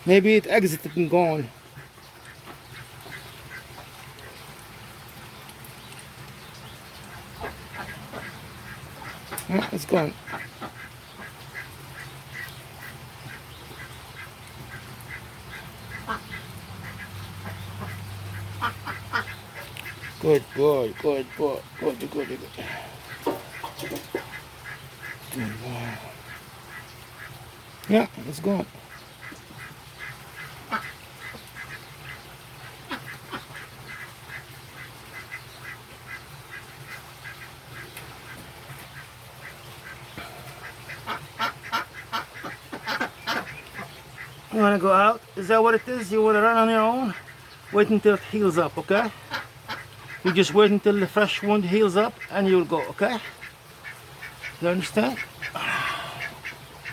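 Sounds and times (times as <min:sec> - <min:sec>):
bird calls: 0:05.3 - 0:32.3.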